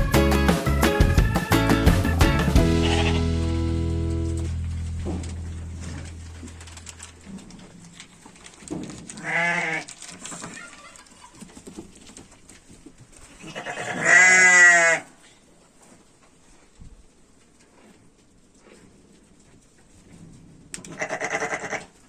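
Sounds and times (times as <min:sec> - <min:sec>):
sheep bleating: 0:02.6 - 0:03.6, 0:13.4 - 0:15.1, 0:20.9 - 0:21.9.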